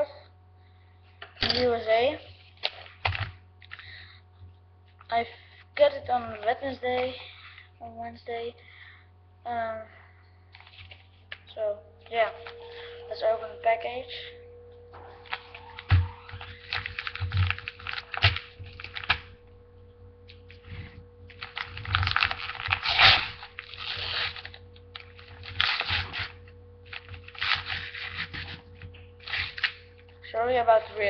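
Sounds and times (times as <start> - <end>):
package being torn open: 15.3 - 19.3, 21.3 - 28.6, 29.2 - 29.8.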